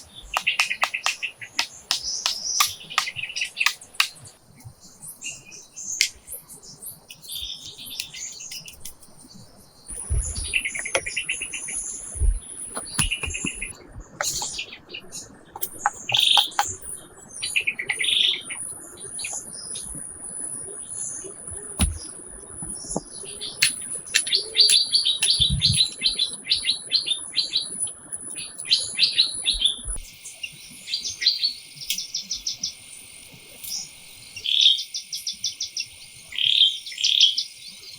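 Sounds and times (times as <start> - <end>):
sharp clicks and knocks: 0.0 - 4.2, 12.2 - 14.6, 15.6 - 16.8, 21.8 - 22.1
birds chirping: 0.0 - 37.9.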